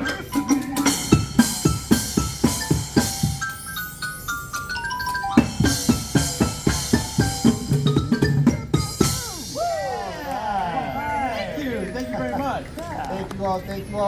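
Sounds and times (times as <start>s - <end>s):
drum beat: 0.0s - 3.6s, 5.3s - 10.2s
mallet instrument notes: 0.0s - 10.4s.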